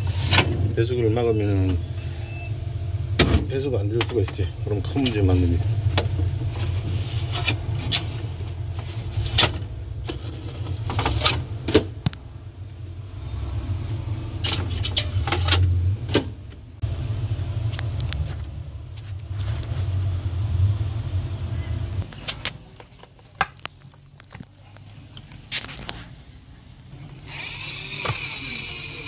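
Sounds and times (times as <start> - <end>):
low machine hum: 0.0 - 22.0.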